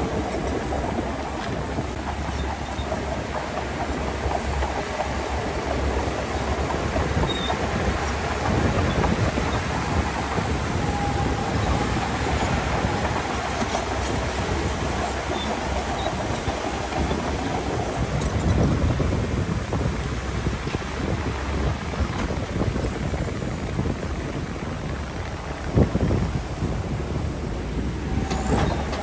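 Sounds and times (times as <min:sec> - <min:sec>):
rattling and clatter: 0:00.0 - 0:27.4
heavy machinery engine rumble: 0:00.0 - 0:29.0.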